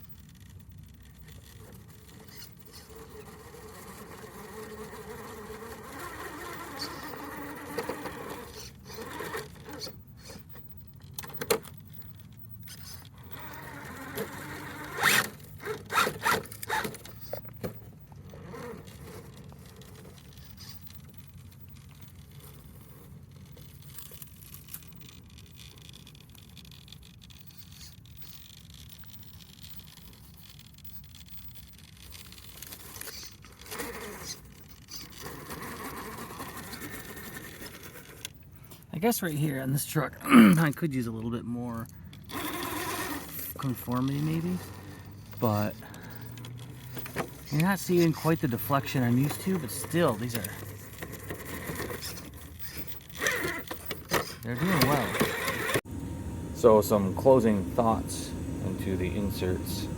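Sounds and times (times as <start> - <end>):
electric motor whining: 2.1 - 10.6, 12.7 - 17.3, 42.2 - 59.9.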